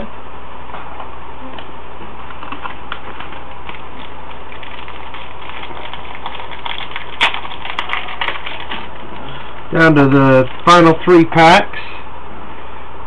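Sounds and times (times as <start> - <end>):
low electrical hum: 0.0 - 13.0
cards and wrappers crinkling: 2.2 - 11.3.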